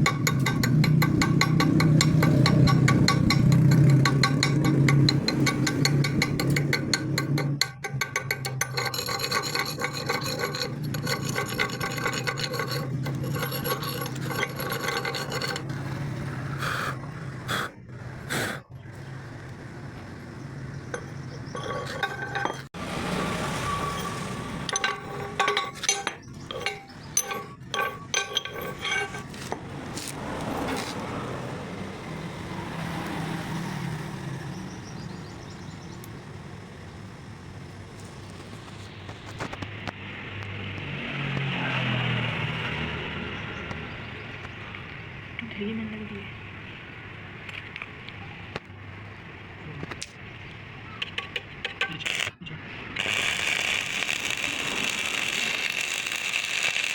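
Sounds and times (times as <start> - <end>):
metal scraping on steel: 0.0 - 16.0, 20.9 - 30.9, 51.2 - 52.4, 53.0 - 56.9.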